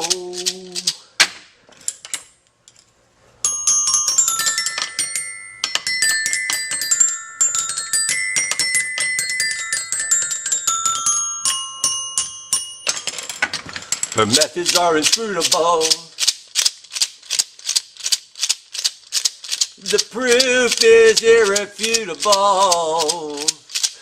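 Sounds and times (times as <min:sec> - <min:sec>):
bright ringing struck notes: 0:03.4 - 0:13.4.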